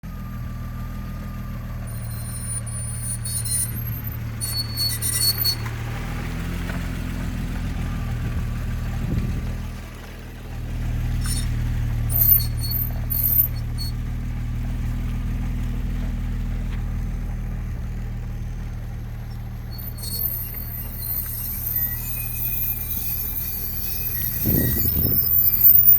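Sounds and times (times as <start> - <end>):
car engine running: 0.0 - 25.9
high-pitched squeaks: 1.9 - 5.8, 11.2 - 14.0, 19.3 - 25.9.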